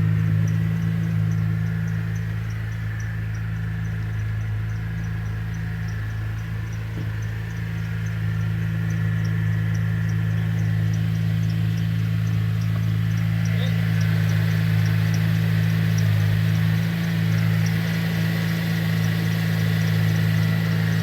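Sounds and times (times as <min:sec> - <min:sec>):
car engine idling: 0:00.0 - 0:21.0.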